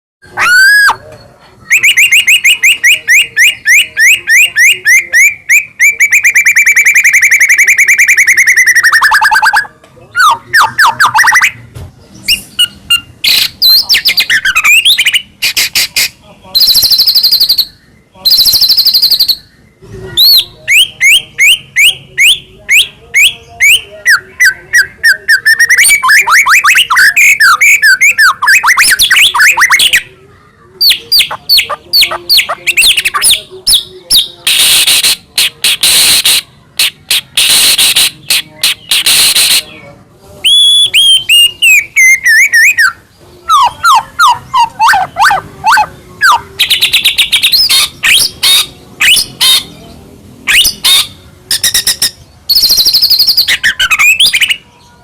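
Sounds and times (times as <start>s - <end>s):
bird singing whistles and trills: 0.3s - 11.6s, 12.2s - 30.1s, 40.4s - 49.6s, 50.5s - 54.6s.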